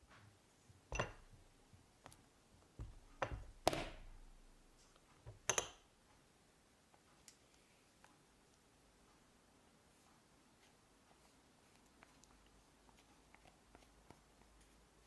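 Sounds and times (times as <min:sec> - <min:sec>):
taps and clicks of hard objects: 0:00.9 - 0:01.4, 0:02.8 - 0:04.2, 0:05.3 - 0:05.8.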